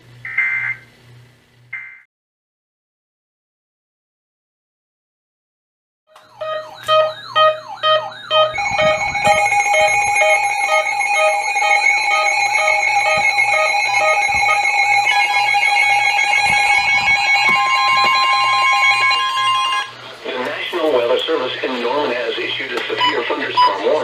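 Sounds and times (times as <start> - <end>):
alert device beeping: 6.2 - 19.9, 23.0 - 24.0
steady alert tones: 6.2 - 20.0
warbling alert tone: 6.2 - 20.0.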